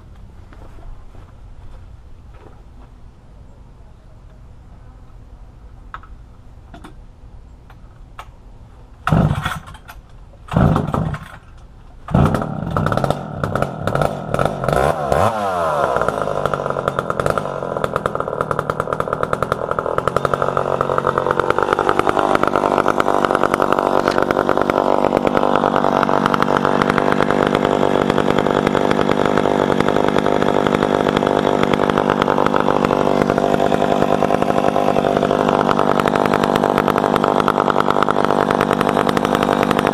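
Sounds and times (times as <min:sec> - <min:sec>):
chainsaw pull-starting: 0:09.0 - 0:39.9
chainsaw running: 0:09.0 - 0:39.9.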